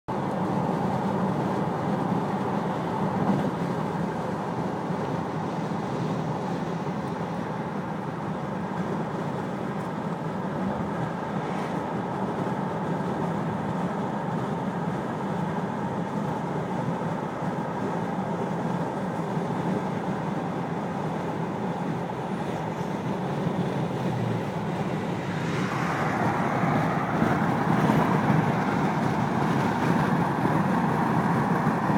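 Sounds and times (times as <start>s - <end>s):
vehicle running: 0.1s - 31.9s
falling sweep: 24.2s - 29.7s.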